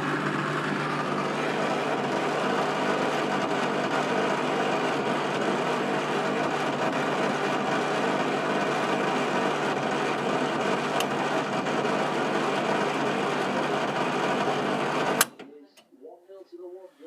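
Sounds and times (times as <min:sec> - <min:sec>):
washing machine spinning: 0:00.0 - 0:15.3.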